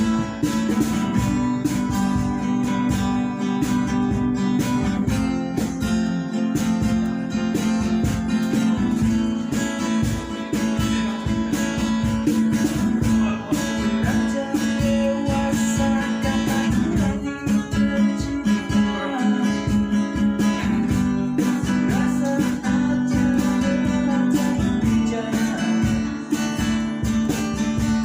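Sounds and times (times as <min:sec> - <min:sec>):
cajon beat: 0:00.0 - 0:28.0
strummed acoustic guitars: 0:00.0 - 0:28.0.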